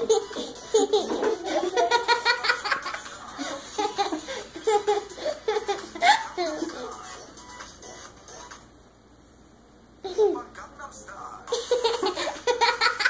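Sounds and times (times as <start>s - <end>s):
person laughing and giggling: 0.0s - 6.8s, 11.5s - 13.0s.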